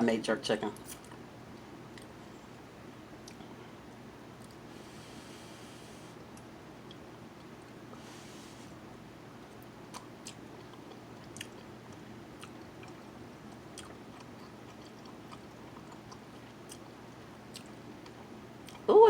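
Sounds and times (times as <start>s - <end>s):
low steady hum: 0.0s - 19.0s
person chewing food: 3.2s - 3.5s, 9.5s - 18.9s.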